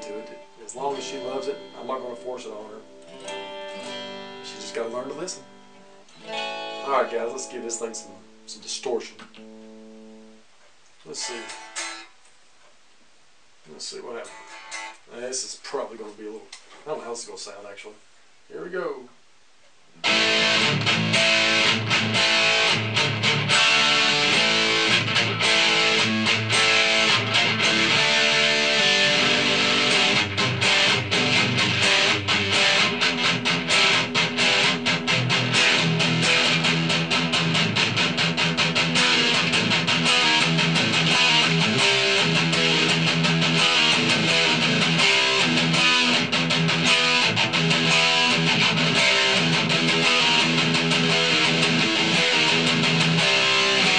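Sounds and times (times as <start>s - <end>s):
distorted electric guitar riffing: 0.0s - 10.4s, 11.1s - 12.2s, 13.9s - 15.4s, 20.0s - 53.9s.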